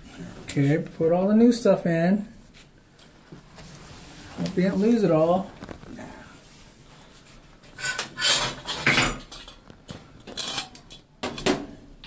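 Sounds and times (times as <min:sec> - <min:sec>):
valve parts clattering and rustling: 0:07.6 - 0:11.7.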